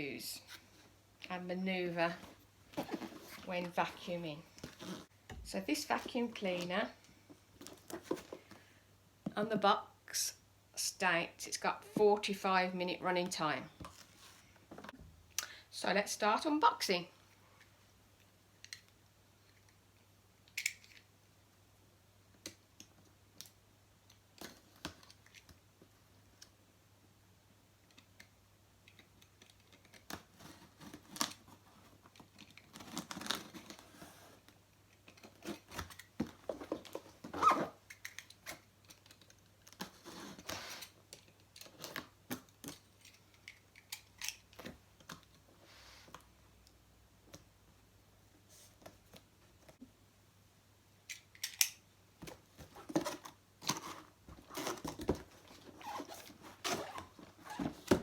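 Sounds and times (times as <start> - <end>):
packaging clicks and scrapes: 52.6 - 58.0.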